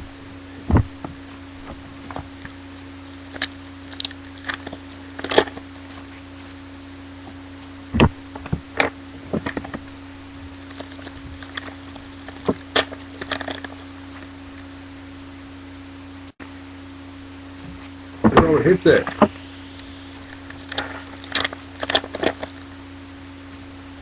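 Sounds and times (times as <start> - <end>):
steady low hum: 0.0 - 24.0
louder thumps: 0.6 - 2.4, 7.3 - 9.9.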